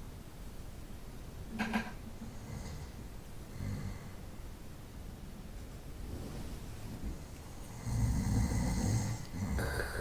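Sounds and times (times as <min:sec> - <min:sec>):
person snoring: 0:07.7 - 0:10.0.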